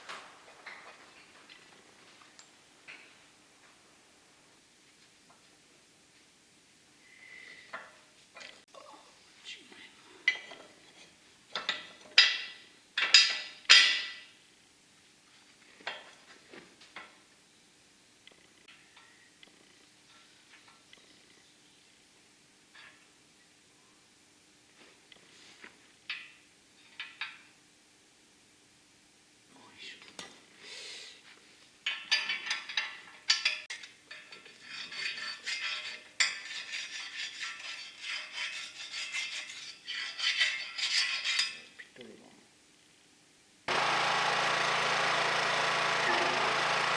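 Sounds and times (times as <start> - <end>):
welding arc crackling: 43.7 - 46.9.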